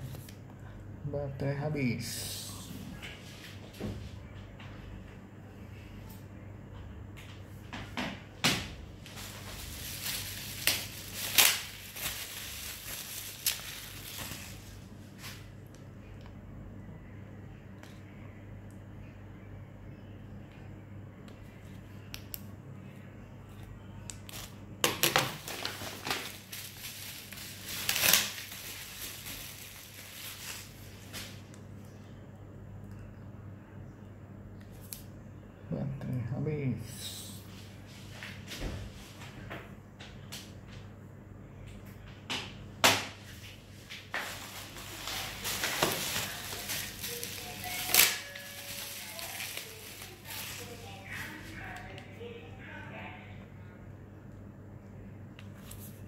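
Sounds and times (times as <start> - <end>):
packaging crinkling and scraping: 9.1 - 15.4, 24.3 - 31.3, 44.2 - 50.8.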